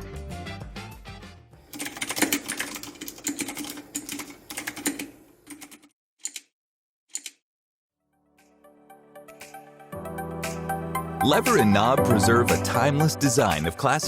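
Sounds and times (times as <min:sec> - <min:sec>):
background music: 0:00.0 - 0:01.7, 0:08.1 - 0:14.0
clicky mechanical keyboard typing: 0:01.7 - 0:06.5, 0:07.1 - 0:07.4.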